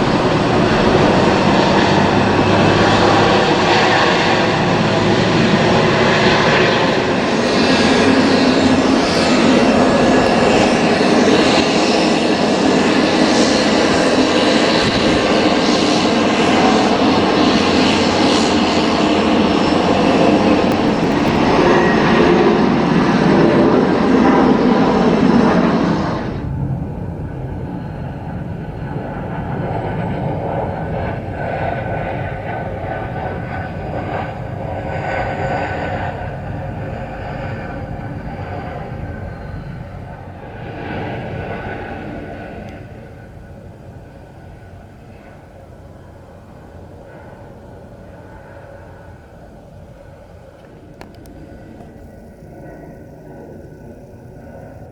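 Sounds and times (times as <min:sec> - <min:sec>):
steady low rumble: 0:00.0 - 0:13.6
jet airliner passing: 0:00.0 - 0:54.9.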